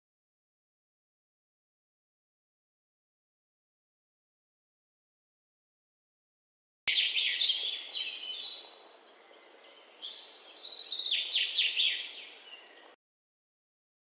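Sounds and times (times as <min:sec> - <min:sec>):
songbird chirping: 0:06.9 - 0:13.0.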